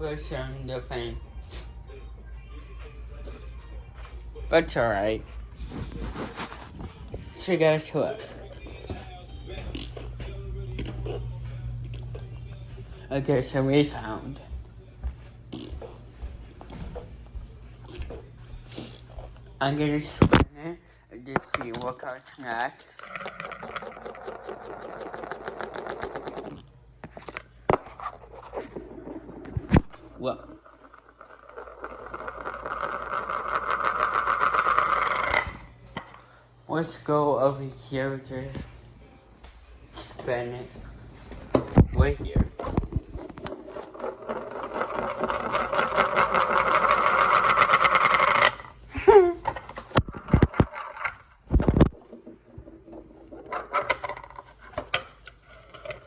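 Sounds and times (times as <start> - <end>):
whirring hum: 8.1 - 19.6.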